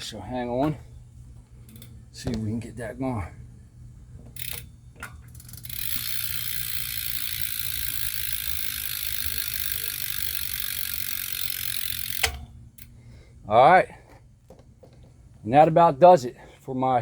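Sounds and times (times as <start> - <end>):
bicycle hub ratcheting buzz: 1.6 - 2.1, 4.3 - 13.0.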